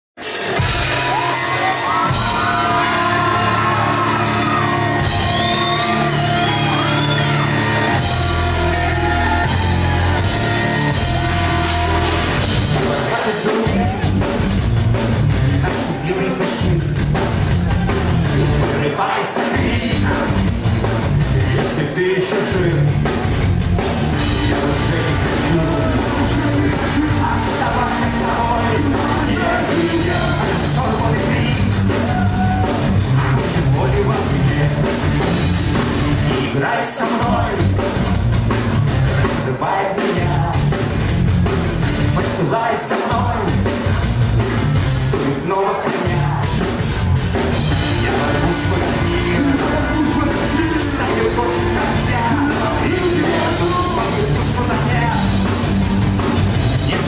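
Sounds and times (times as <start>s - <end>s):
live rock band playing: 0.2s - 57.0s
crowd shouting: 0.5s - 14.3s, 23.3s - 34.3s, 47.1s - 57.0s.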